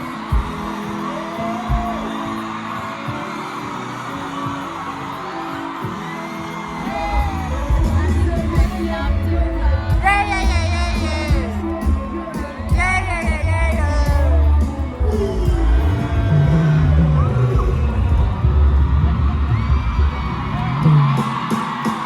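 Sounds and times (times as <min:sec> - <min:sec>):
pop music with singing: 0:00.0 - 0:22.0
heavy bass beat: 0:07.0 - 0:22.0.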